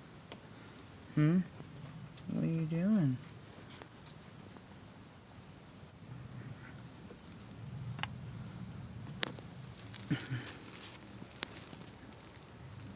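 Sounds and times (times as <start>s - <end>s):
insect chirping: 0.0s - 1.4s, 2.3s - 3.7s, 4.3s - 12.9s
low steady rumble: 4.6s - 12.9s.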